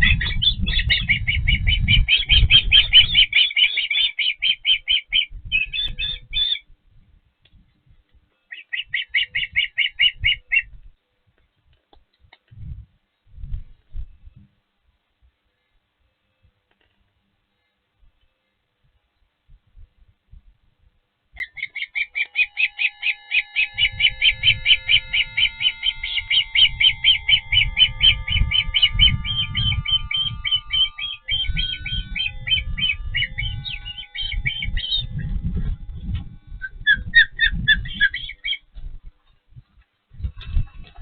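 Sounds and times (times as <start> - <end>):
osprey whistled chirps: 0.0 - 6.6, 21.4 - 35.4, 36.5 - 38.7
low irregular rumble: 22.2 - 41.0.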